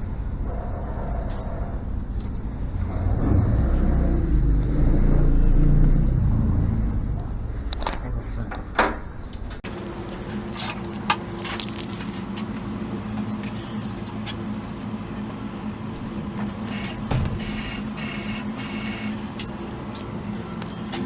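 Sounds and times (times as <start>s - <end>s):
low rumble: 0.0s - 9.6s
steady hum: 0.0s - 20.8s
metal clinking: 2.1s - 3.2s, 10.5s - 12.2s.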